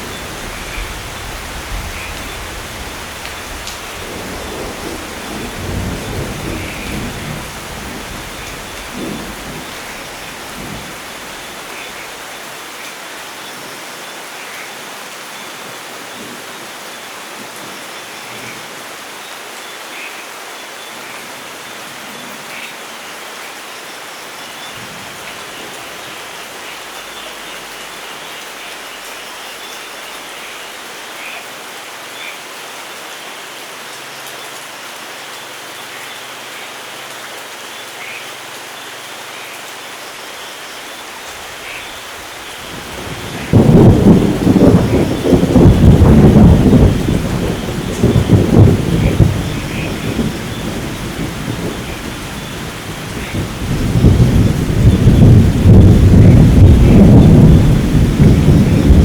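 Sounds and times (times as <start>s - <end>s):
thunder rumble: 0.0s - 12.0s, 42.3s - 59.0s
heavy rain falling: 0.0s - 59.0s.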